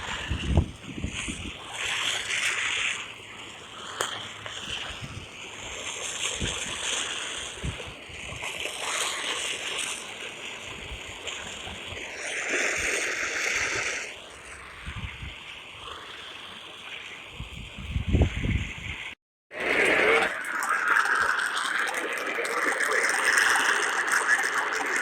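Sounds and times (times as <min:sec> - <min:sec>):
rushing hiss: 0:00.0 - 0:17.2.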